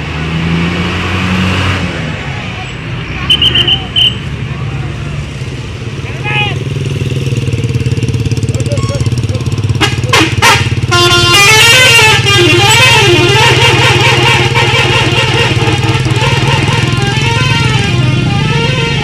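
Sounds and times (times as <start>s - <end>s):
engine running: 3.4s - 19.0s
musical horn melody: 9.7s - 19.0s.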